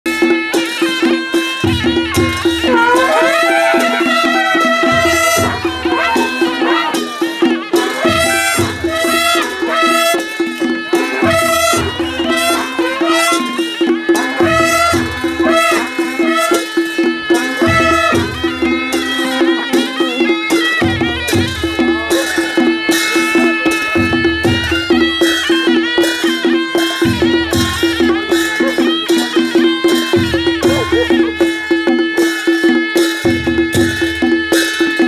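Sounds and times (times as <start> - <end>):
drums and cymbals: 0.1 - 35.0
reed instrument melody: 0.1 - 35.0.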